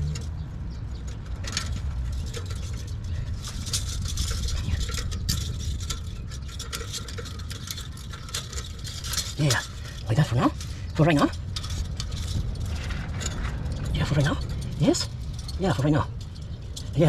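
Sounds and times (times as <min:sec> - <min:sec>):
low rumble: 0:00.0 - 0:17.0
metallic clicks and scrapes: 0:00.0 - 0:17.0.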